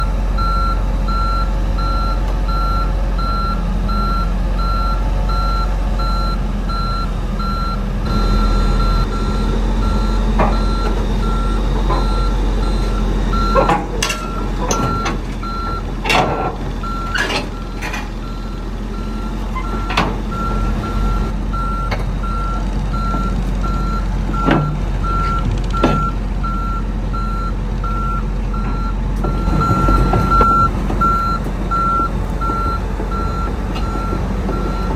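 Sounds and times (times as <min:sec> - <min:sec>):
reversing alarm beeping: 0:00.0 - 0:15.9, 0:16.8 - 0:34.9
diesel engine running: 0:00.0 - 0:34.9
sharp metal clanks and knocks: 0:13.6 - 0:15.2.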